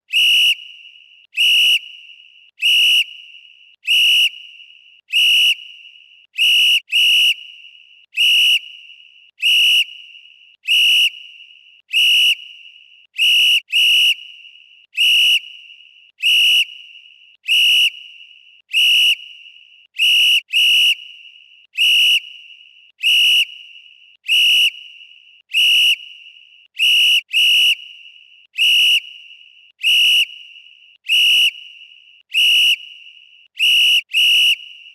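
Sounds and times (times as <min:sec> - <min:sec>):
referee's whistle blasts: 0:00.2 - 0:00.8.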